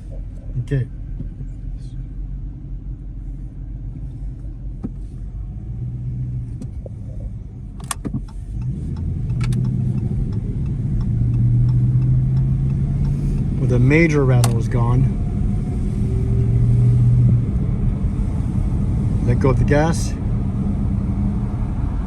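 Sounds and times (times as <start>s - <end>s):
car engine pulling under throttle: 0.0s - 22.0s
sharp clicks: 14.3s - 14.7s.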